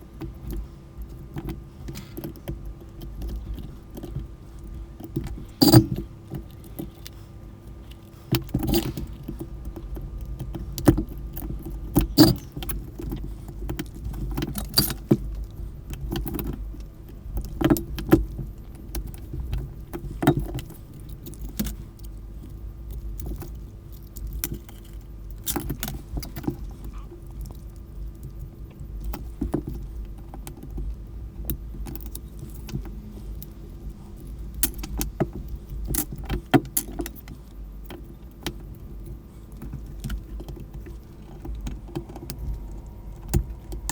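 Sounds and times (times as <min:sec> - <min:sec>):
steady low hum: 0:00.0 - 0:43.9.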